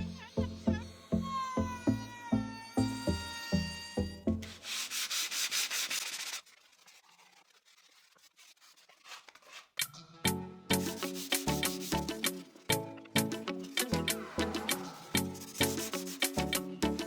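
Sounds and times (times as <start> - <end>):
sandpaper rubbing on wood: 4.4 - 9.8, 10.7 - 12.5, 13.7 - 16.7
background music with a beat: 10.3 - 17.0.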